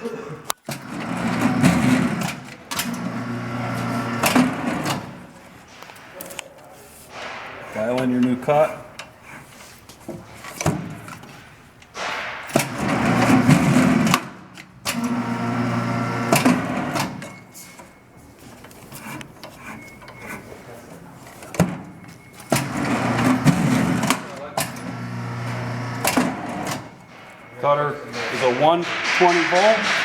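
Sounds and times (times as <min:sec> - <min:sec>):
paper cutter motor humming: 0:00.7 - 0:05.3, 0:14.9 - 0:17.2, 0:22.6 - 0:27.3.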